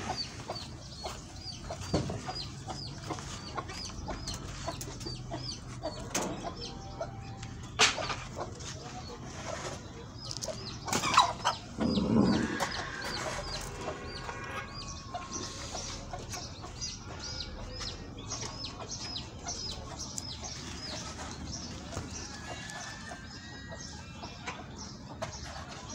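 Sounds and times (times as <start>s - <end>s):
chickens clucking: 0.0s - 25.9s
low animal sound: 11.4s - 16.1s.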